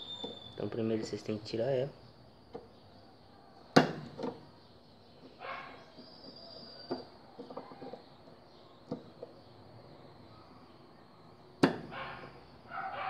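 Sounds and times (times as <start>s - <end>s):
tools clicking and knocking on metal: 3.8s - 4.5s.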